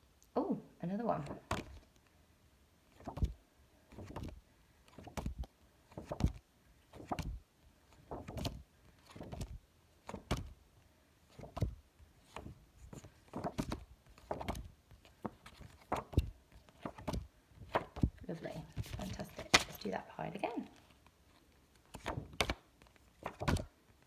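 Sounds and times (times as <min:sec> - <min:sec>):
flashcards swishing and slapping: 0:02.9 - 0:10.5, 0:11.3 - 0:19.9, 0:21.8 - 0:23.7.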